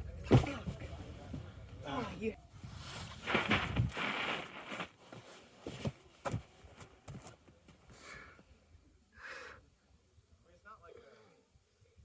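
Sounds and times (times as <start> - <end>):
hands and shoes scuffing on rock: 3.2 - 7.8.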